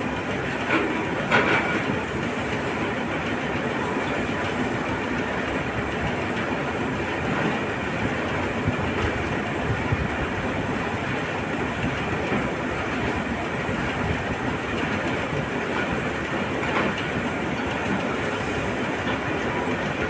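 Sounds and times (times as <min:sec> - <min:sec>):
heavy machinery running: 0:00.0 - 0:20.0.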